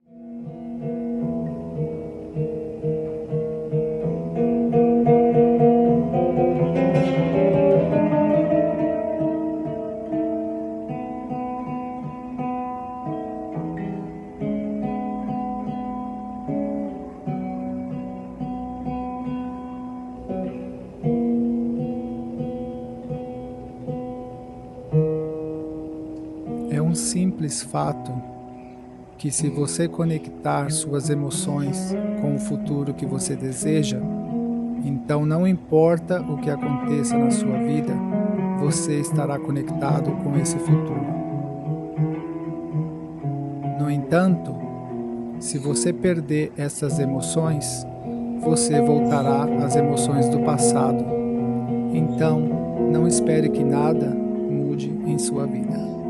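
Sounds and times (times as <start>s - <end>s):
acoustic guitar picking chords: 0.0s - 56.0s.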